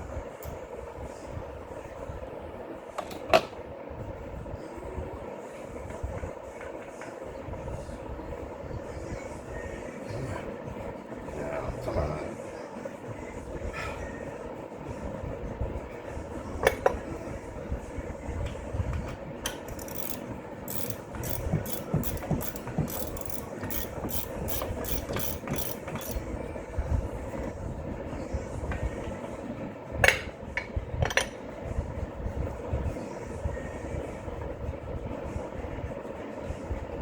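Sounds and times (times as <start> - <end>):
hand tool clicking: 19.5 - 26.2
metallic clanks: 19.7 - 26.2.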